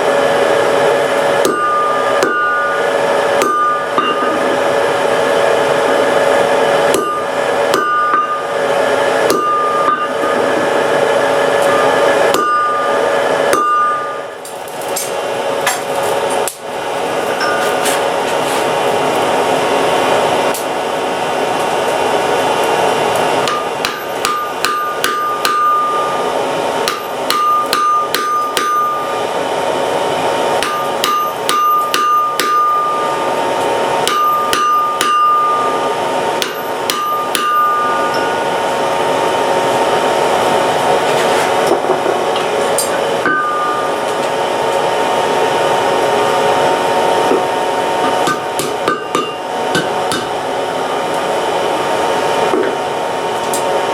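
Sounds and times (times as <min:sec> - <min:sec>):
steady whir: 0:00.0 - 0:53.9
hammer striking iron on anvil: 0:01.2 - 0:04.8, 0:06.7 - 0:10.8, 0:11.5 - 0:15.9, 0:23.4 - 0:29.2, 0:30.6 - 0:33.3, 0:34.0 - 0:38.7, 0:42.8 - 0:44.2, 0:47.3 - 0:50.4
anvil ringing: 0:01.4 - 0:04.9, 0:06.9 - 0:10.8, 0:11.5 - 0:14.4, 0:17.4 - 0:17.8, 0:23.4 - 0:29.2, 0:30.6 - 0:33.3, 0:34.0 - 0:39.0, 0:42.8 - 0:44.2, 0:48.1 - 0:50.4.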